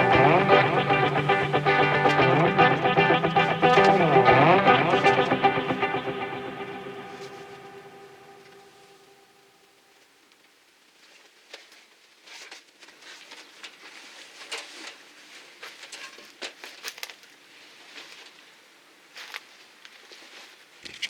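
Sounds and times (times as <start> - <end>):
crinkling and rustling: 10.9 - 21.0.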